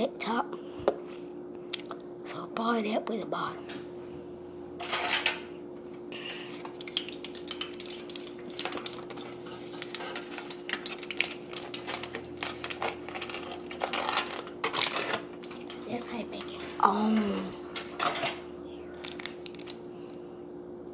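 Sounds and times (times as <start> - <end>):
faint steady hum: 0.0 - 20.9
material crinkling and clicking: 6.6 - 19.8.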